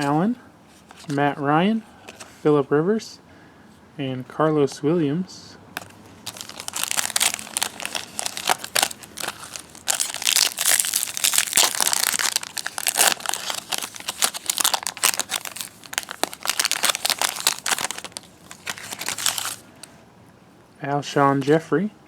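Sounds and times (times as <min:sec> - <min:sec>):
card pack wrapper crinkling: 0:05.8 - 0:19.9.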